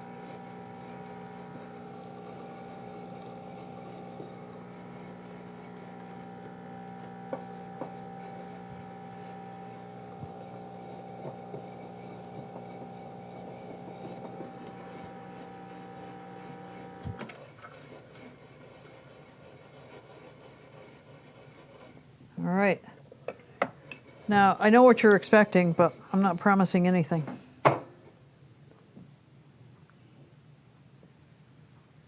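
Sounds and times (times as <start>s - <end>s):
espresso machine pump humming: 0.0s - 20.7s.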